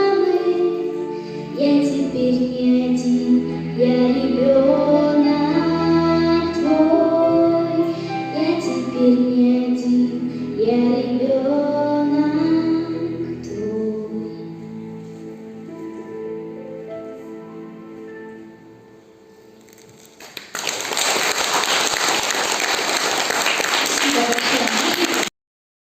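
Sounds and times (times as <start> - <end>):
woman singing slow melody: 0.0 - 14.7
soft accompaniment: 0.0 - 25.3.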